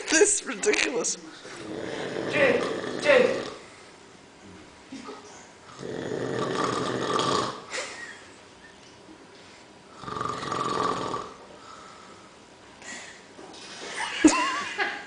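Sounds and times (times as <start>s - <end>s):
man snoring: 1.6s - 3.6s, 5.7s - 7.7s, 9.9s - 11.4s.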